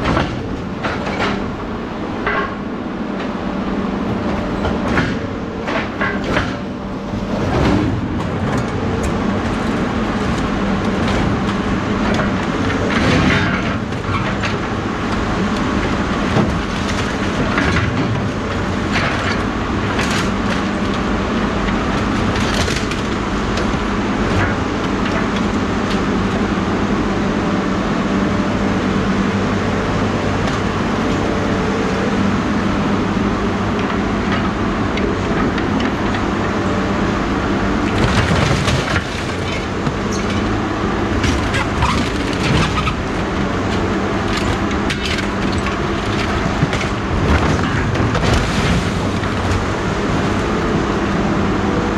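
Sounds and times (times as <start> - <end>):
clanks and rattles: 0.0 - 21.0, 37.8 - 50.4.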